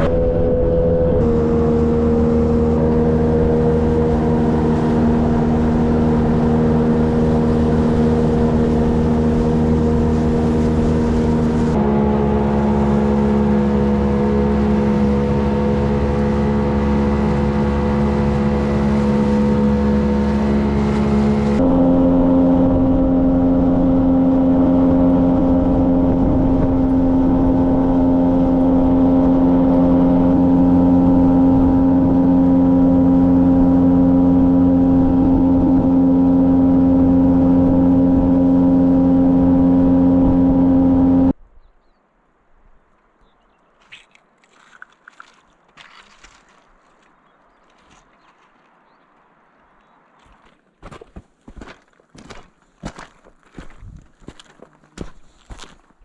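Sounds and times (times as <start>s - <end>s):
boat engine running: 0.0s - 41.4s.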